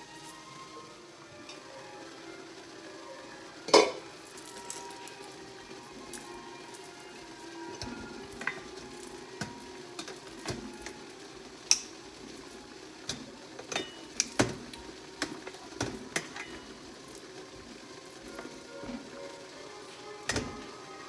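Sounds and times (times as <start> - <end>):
cookware clinking and knocking: 3.7 - 5.0, 13.1 - 16.8, 20.3 - 20.7.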